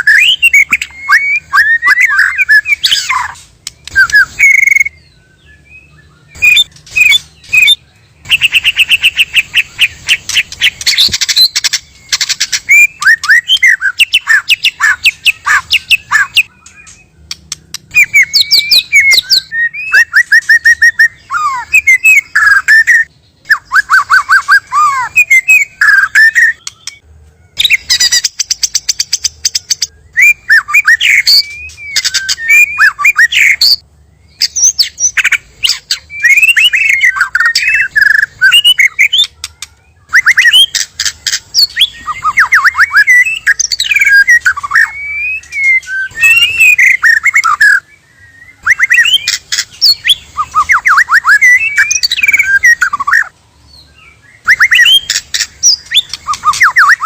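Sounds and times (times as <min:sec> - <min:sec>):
birds singing whistled phrases: 0:00.0 - 0:57.0
rapid clicking bird chatter: 0:01.9 - 0:04.9, 0:06.4 - 0:19.4, 0:23.8 - 0:27.0, 0:27.6 - 0:29.9, 0:30.7 - 0:33.8, 0:34.4 - 0:47.8, 0:48.6 - 0:53.3, 0:54.5 - 0:57.0.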